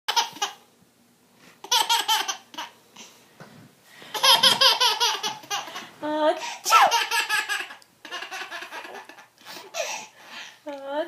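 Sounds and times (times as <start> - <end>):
small child laughing: 0.1 - 0.6, 1.6 - 2.8, 4.1 - 5.9, 6.6 - 10.1.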